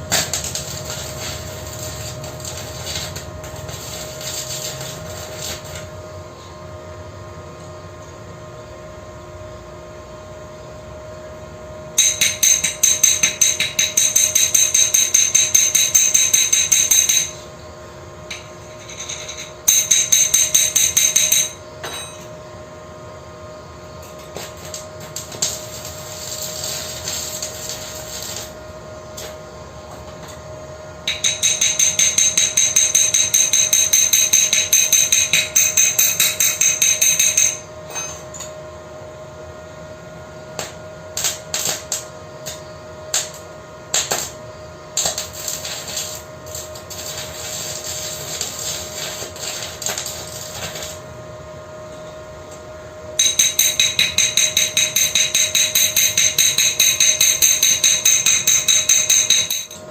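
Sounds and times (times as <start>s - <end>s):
steady hum: 0.0s - 59.9s
hammer blows on metal: 53.2s - 59.8s.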